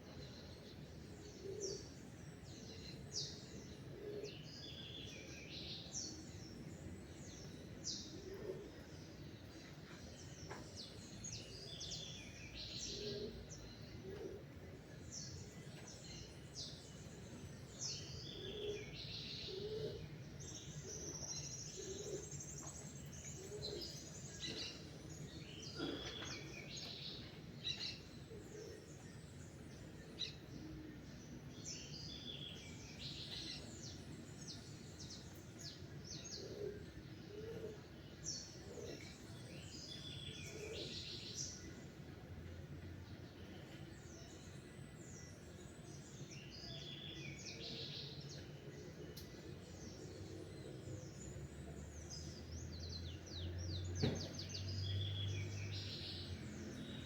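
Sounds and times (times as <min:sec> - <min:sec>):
low background noise: 0:00.0 - 0:57.0
songbirds chirping and singing: 0:00.0 - 0:57.0.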